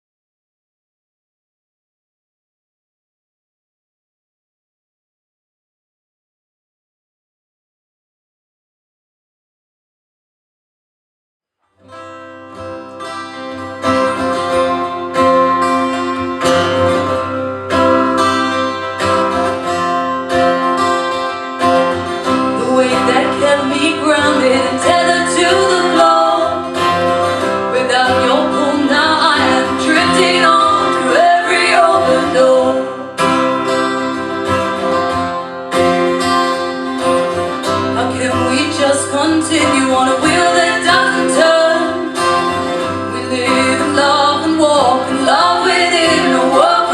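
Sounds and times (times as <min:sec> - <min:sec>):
strummed acoustic guitar: 0:11.8 - 0:46.9
person singing: 0:22.3 - 0:33.6, 0:37.8 - 0:46.9.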